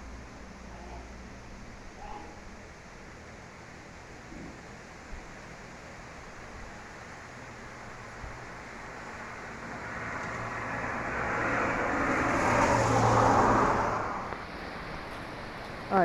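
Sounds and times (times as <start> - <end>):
steady background hiss: 0.0 - 16.0
vehicle driving past: 8.4 - 14.6.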